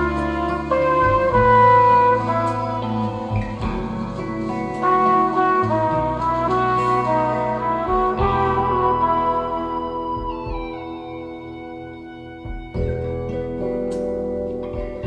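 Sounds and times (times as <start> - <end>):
brass lead holding long notes: 0.0 - 13.2
low bass: 0.0 - 15.0.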